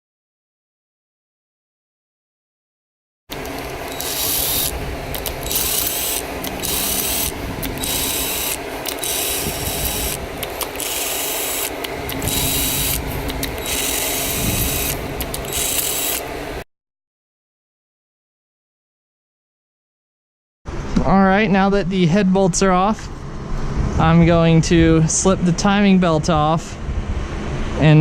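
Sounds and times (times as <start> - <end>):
ratchet clicking: 3.3 - 16.3.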